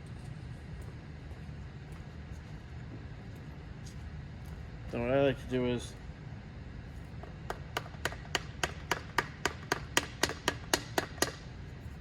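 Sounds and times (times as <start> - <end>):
tool clicking on piston compressor: 7.2 - 11.5.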